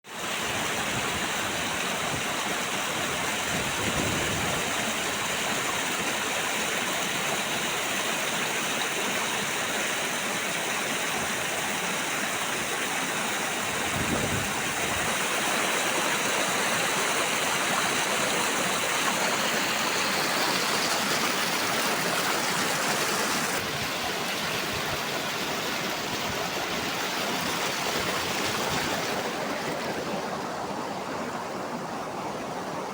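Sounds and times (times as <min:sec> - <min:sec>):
waterfall water splashing: 0:00.1 - 0:32.9.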